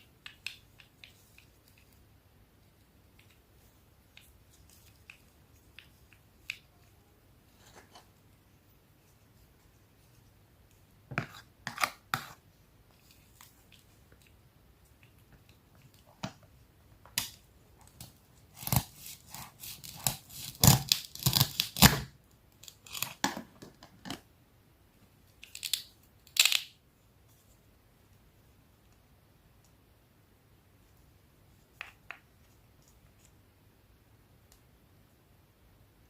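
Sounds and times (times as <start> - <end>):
knife slicing crisp apple: 18.5 - 22.1.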